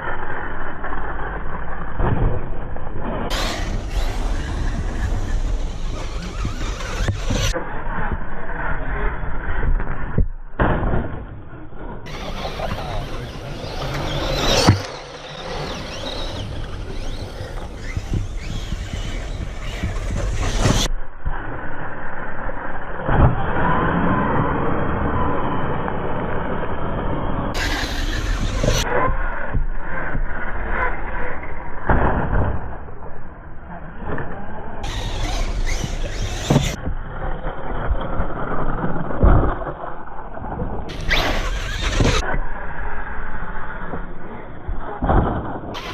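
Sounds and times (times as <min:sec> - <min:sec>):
tyre and ground noise: 0:02.0 - 0:21.4, 0:27.5 - 0:33.0, 0:34.2 - 0:42.5
rc car motor whining: 0:03.3 - 0:07.6, 0:12.1 - 0:20.9, 0:27.6 - 0:29.0, 0:34.8 - 0:36.8, 0:40.9 - 0:42.3
tyres on dirt: 0:03.3 - 0:07.6, 0:12.1 - 0:20.9, 0:34.8 - 0:36.8, 0:40.9 - 0:42.2.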